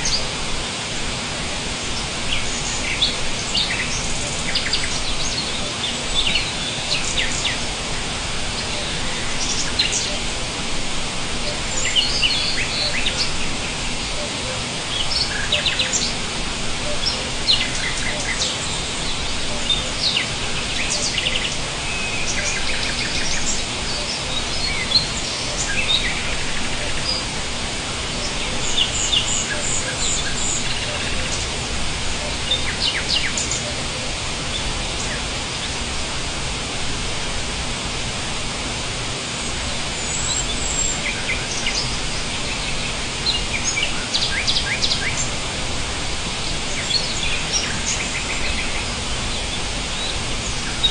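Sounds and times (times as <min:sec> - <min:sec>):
outdoor background hiss: 0:00.0 - 0:50.9
small birds chirping: 0:01.6 - 0:37.6, 0:38.3 - 0:50.9.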